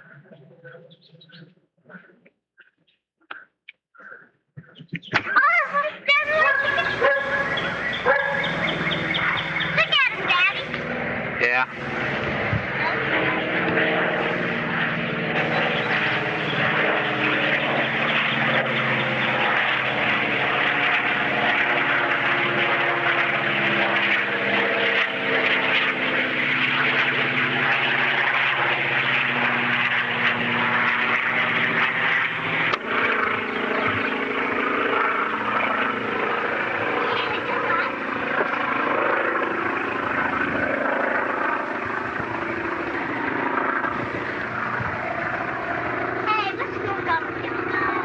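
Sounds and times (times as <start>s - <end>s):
engine droning: 5.9s - 48.0s.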